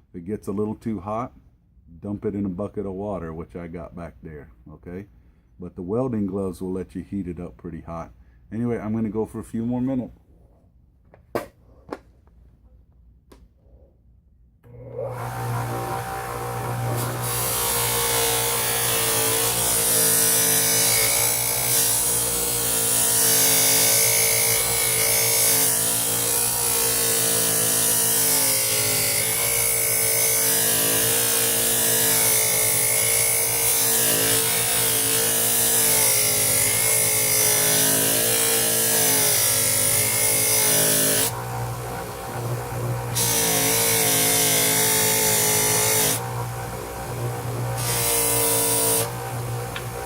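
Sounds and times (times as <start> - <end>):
grinder motor hum: 14.6 - 50.0.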